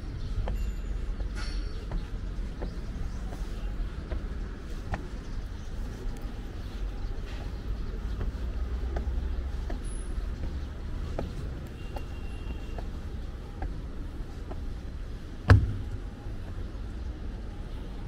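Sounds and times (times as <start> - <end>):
faint clicking footsteps: 0.0 - 18.0
traffic rumble: 0.0 - 18.0
sharp loud knock: 15.5 - 16.0.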